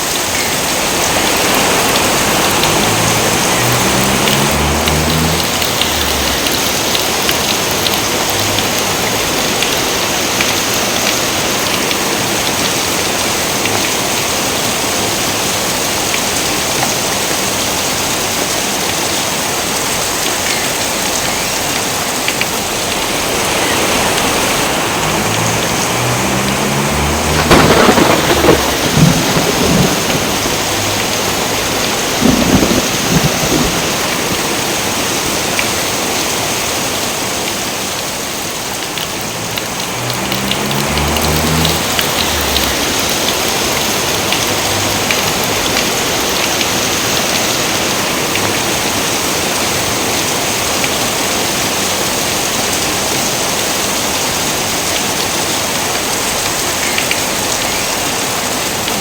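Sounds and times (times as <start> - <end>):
heavy rain falling: 0.0 - 59.0
thunder rumble: 0.8 - 9.4, 22.8 - 35.0, 39.0 - 46.2.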